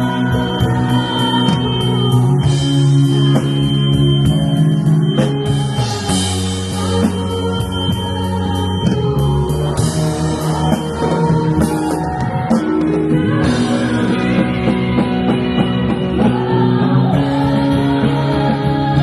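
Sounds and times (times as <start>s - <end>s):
drum kit: 0.0s - 19.0s
guitar: 0.0s - 19.0s
person singing: 5.5s - 19.0s.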